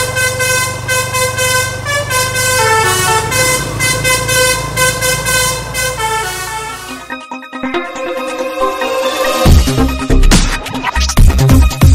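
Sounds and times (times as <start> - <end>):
bus horn playing a tune: 0.0 - 7.4.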